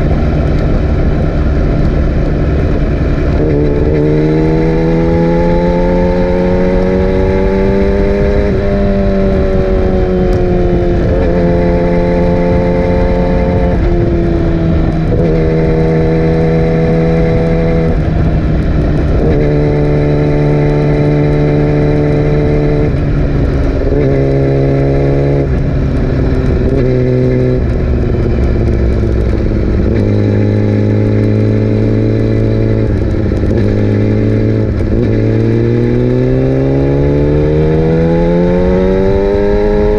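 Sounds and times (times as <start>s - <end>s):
motorcycle engine with gear changes: 0.0s - 39.9s.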